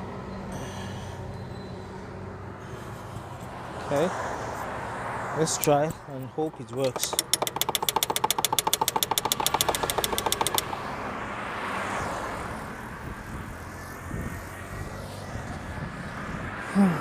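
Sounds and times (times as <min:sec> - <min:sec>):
car starter clicking rapidly: 0:05.6 - 0:11.0.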